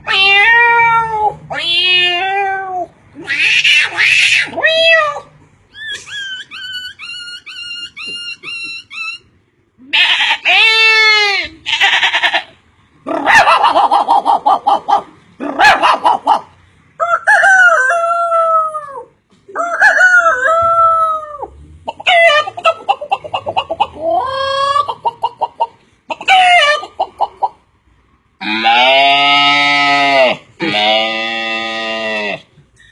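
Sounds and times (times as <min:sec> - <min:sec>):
man imitating chickens: 0:13.1 - 0:27.6.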